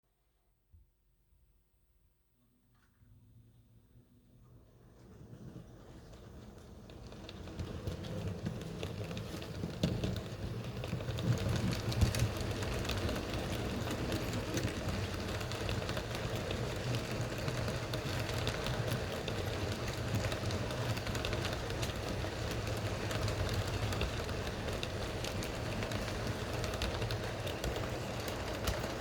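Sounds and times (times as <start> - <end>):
wheel and rail clicks: 5.8 - 29.0
model train motor hum: 7.1 - 29.0.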